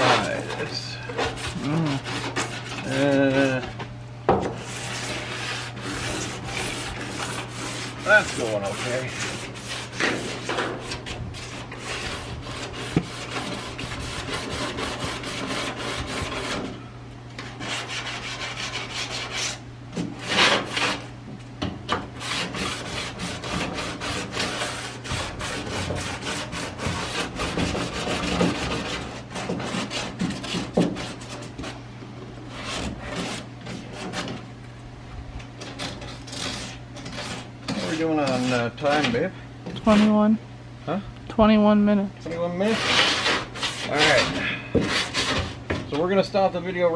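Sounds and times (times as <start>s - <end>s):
orbital sander grinding paint: 0.0s - 3.6s, 4.5s - 16.7s, 22.2s - 31.7s.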